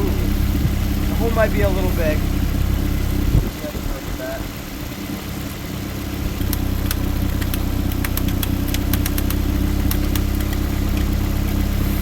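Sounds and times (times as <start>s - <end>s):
car engine idling: 0.0s - 12.0s
sharp clicks: 6.4s - 11.6s.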